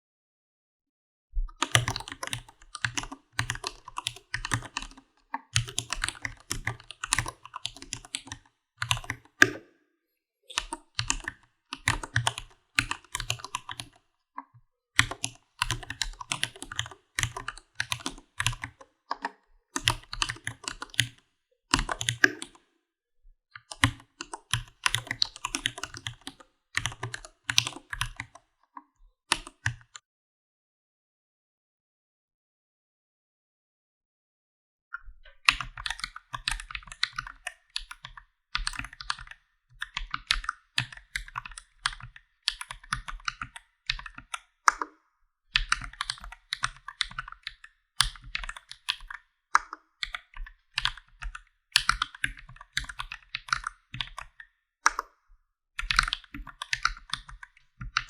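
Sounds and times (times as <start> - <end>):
keyboard typing: 1.6 - 9.7, 10.5 - 14.0, 15.0 - 21.2, 21.8 - 22.6, 23.6 - 28.4, 35.5 - 44.9, 45.6 - 55.1, 55.8 - 58.0.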